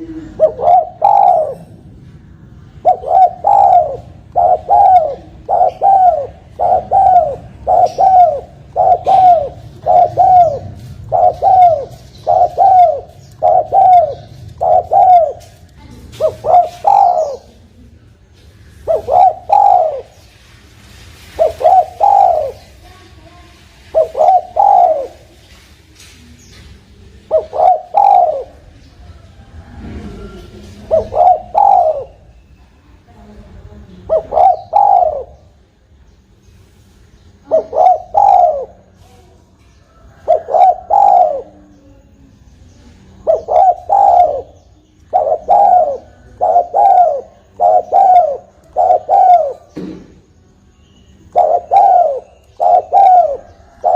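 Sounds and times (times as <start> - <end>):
dove cooing: 0.0 - 17.8, 18.7 - 20.2, 21.3 - 22.8, 23.8 - 25.4, 27.2 - 32.3, 34.0 - 35.6, 37.4 - 39.1, 39.8 - 42.2, 43.1 - 49.8, 51.2 - 53.9.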